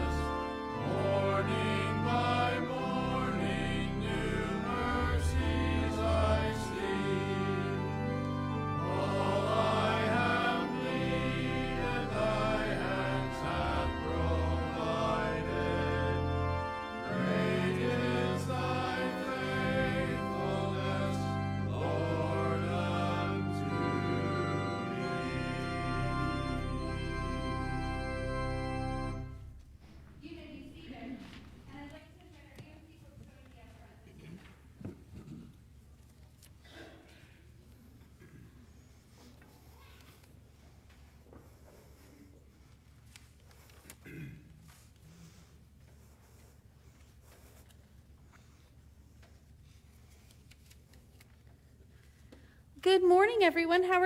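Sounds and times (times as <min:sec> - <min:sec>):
choir singing a hymn: 0:00.0 - 0:29.5
keyboard accompaniment: 0:00.0 - 0:30.0.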